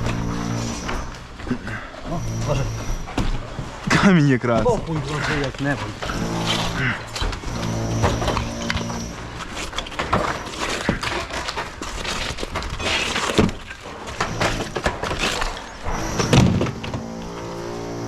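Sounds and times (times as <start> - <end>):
hard material knocking and crashing: 3.1 - 17.2.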